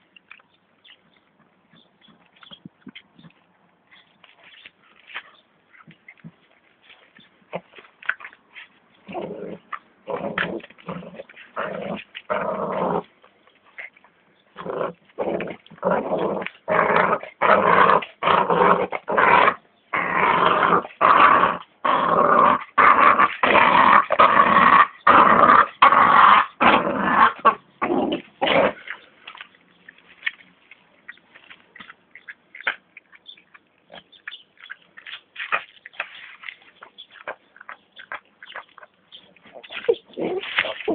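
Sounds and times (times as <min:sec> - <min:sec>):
puppy growling: 0:09.0 - 0:14.0, 0:14.6 - 0:29.1, 0:39.3 - 0:40.9.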